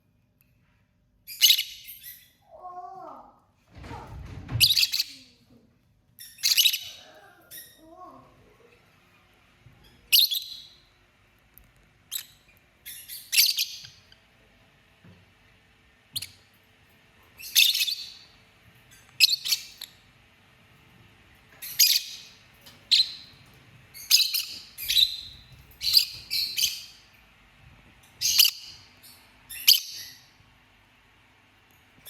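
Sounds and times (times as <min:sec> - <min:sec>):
bird chirping: 0:01.3 - 0:02.4, 0:04.6 - 0:05.4, 0:06.2 - 0:08.0, 0:09.8 - 0:10.9, 0:12.0 - 0:14.2, 0:16.1 - 0:16.5, 0:17.3 - 0:20.1, 0:21.5 - 0:27.1, 0:28.2 - 0:30.4.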